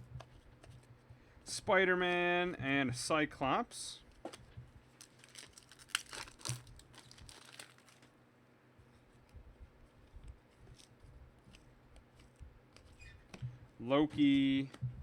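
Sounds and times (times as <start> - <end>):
card wrapper crinkling: 4.9 - 8.1, 10.2 - 13.0
soft clicks of cards: 10.1 - 13.6.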